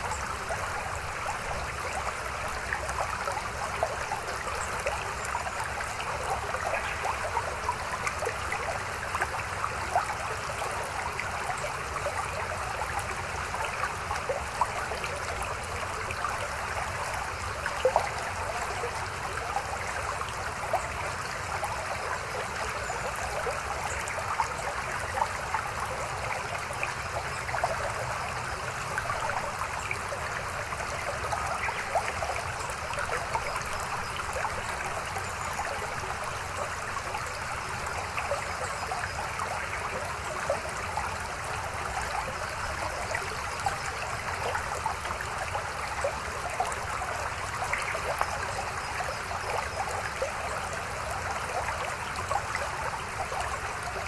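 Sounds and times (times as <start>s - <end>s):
stream babbling over rocks: 0.0s - 54.0s.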